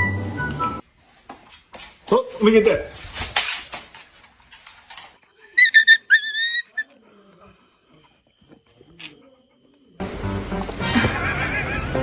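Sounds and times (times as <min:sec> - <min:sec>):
dog whining: 0:05.3 - 0:10.0.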